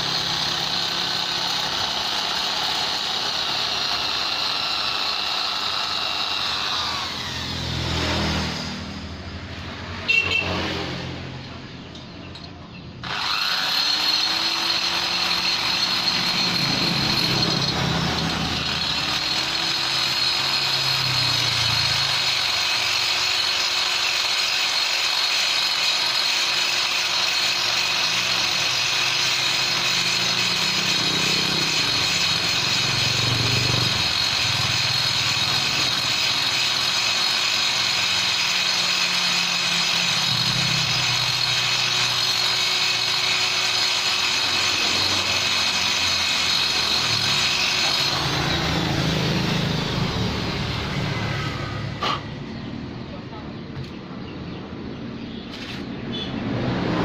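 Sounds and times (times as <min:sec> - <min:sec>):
rotary grinder whining: 0:00.0 - 0:52.6
workshop noise: 0:00.0 - 0:57.0.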